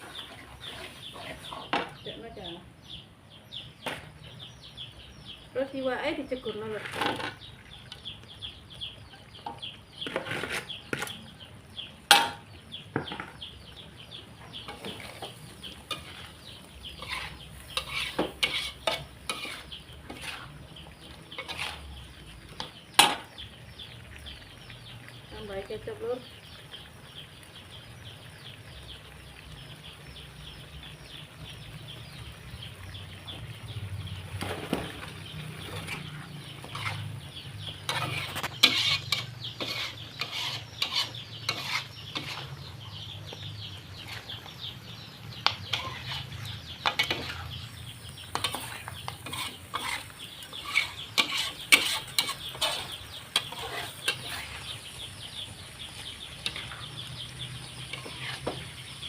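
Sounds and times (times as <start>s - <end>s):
spatula scraping a pan: 0.0s - 1.9s, 6.8s - 7.5s, 9.4s - 11.2s, 14.6s - 23.4s, 34.3s - 43.1s, 43.8s - 44.8s, 45.4s - 59.0s
sauce crackling: 6.4s - 59.0s.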